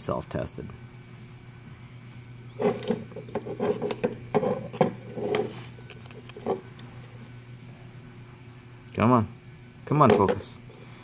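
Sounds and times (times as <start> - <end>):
camera parts rubbing and knocking: 2.6 - 7.3.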